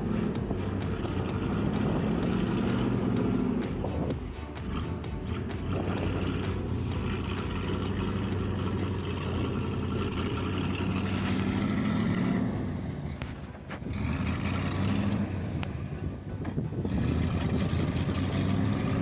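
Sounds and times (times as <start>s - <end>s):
heavy truck engine running: 0.0s - 19.0s.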